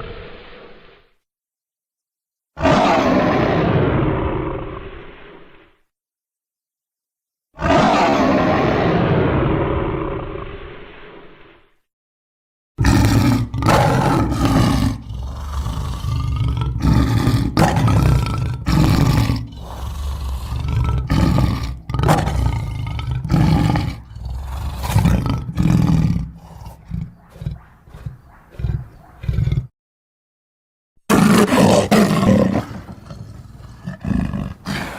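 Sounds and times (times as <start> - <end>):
deep roars and growls: 2.6 - 5.8, 7.6 - 11.6, 12.8 - 29.7, 31.1 - 34.9.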